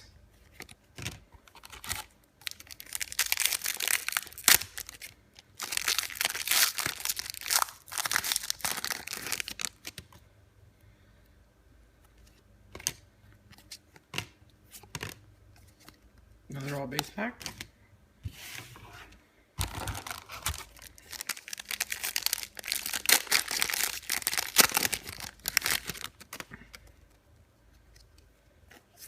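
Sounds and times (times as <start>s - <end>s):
foil wrapper tearing and crinkling: 1.5s - 9.8s, 19.6s - 26.4s.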